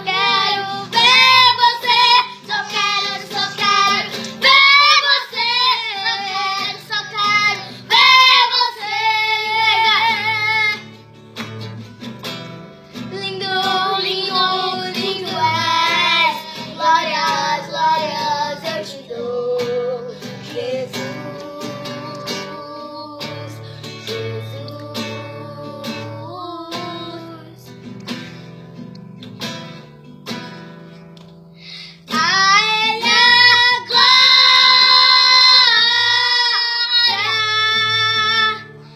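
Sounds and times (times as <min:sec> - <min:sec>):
plucked acoustic guitar: 0:00.0 - 0:38.9
high voice singing: 0:32.1 - 0:38.7.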